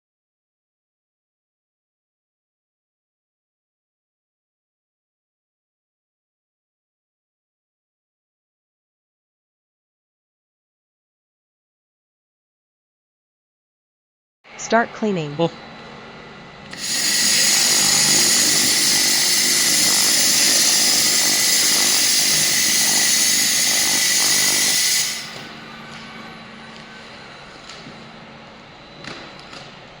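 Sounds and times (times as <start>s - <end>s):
quiet machine hum: 14.5s - 30.0s
laser high-pitched hiss: 16.8s - 25.5s.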